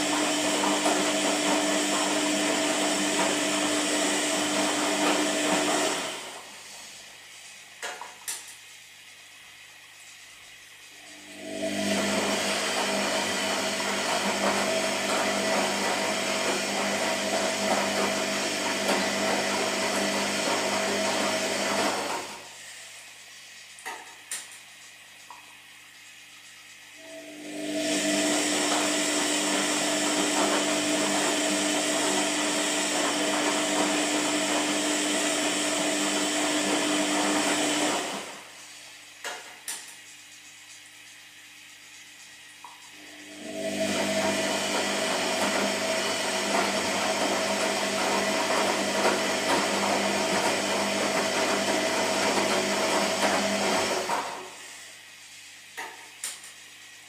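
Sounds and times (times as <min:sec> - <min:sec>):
washing machine running: 0:00.0 - 0:57.0.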